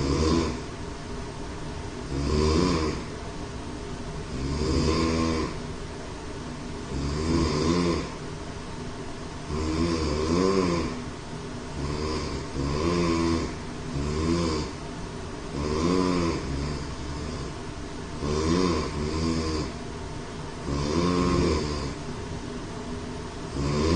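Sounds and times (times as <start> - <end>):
man snoring heavily: 0.0 - 0.7, 2.1 - 3.1, 4.3 - 5.6, 6.9 - 8.2, 9.5 - 11.0, 11.8 - 14.8, 15.5 - 17.6, 18.2 - 19.8, 20.6 - 22.0, 23.5 - 23.9.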